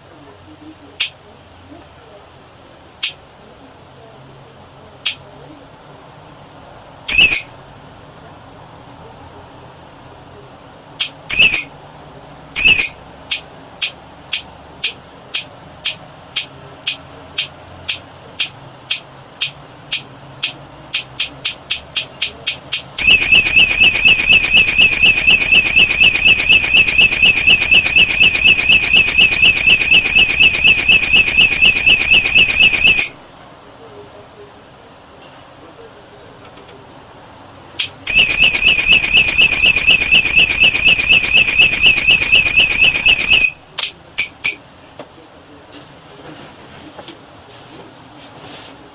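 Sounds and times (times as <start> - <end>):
short high beeps: 7.1 - 7.5, 11.3 - 11.7, 12.6 - 13.0, 23.0 - 33.2, 38.1 - 43.6
alarm chirps: 7.1 - 7.6, 11.3 - 11.8, 12.6 - 13.0, 23.0 - 33.2, 38.1 - 43.6
siren warbling wail: 23.0 - 33.2, 38.1 - 43.6.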